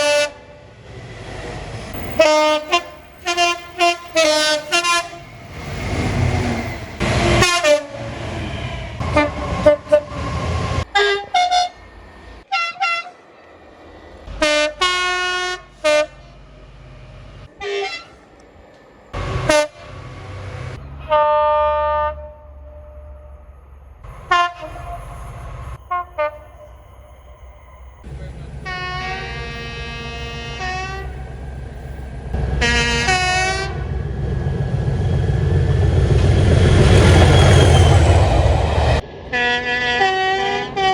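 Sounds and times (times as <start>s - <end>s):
train horn blasts: 0.0s - 0.6s, 2.0s - 5.4s, 6.4s - 8.2s, 9.0s - 10.2s, 12.5s - 13.2s, 14.3s - 16.2s, 17.6s - 18.2s, 19.2s - 20.4s, 21.0s - 23.5s, 24.1s - 26.8s, 28.6s - 31.3s, 32.4s - 34.0s, 39.3s - 40.9s
train engine and rail rumble: 0.0s - 40.9s.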